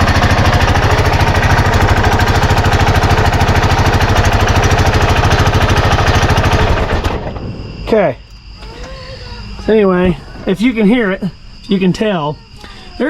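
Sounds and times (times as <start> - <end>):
loud engine with exhaust pulsing: 0.0 - 7.4.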